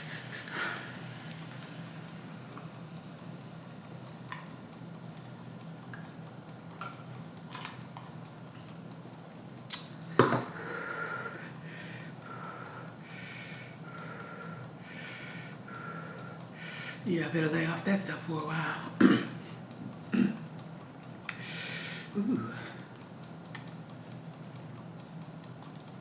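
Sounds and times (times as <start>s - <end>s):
person sniffling and breathing hard: 0.0s - 0.9s, 10.2s - 17.0s, 21.3s - 22.8s.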